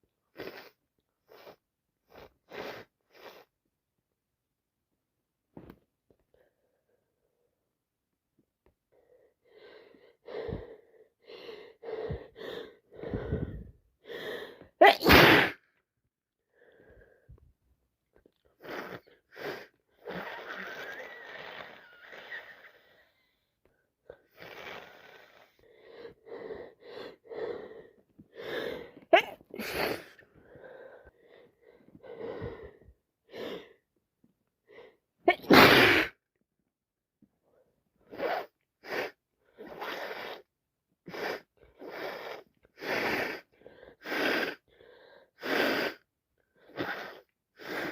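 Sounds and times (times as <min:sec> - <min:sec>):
short gasping breaths: 0:09.1 - 0:14.8
woman sneezing: 0:14.8 - 0:15.6, 0:29.1 - 0:30.2, 0:35.3 - 0:36.2.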